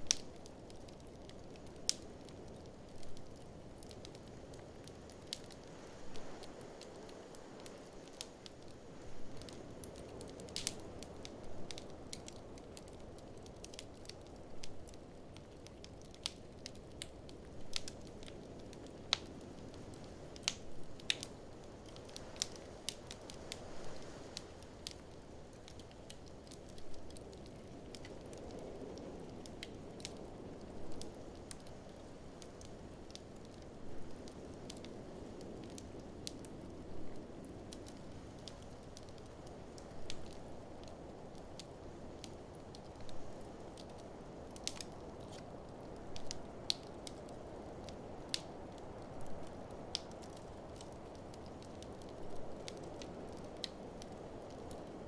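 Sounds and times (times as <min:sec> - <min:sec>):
wood fire crackling: 0:00.0 - 0:55.0
sharp pops and snaps: 0:43.8 - 0:45.5, 0:46.1 - 0:47.3.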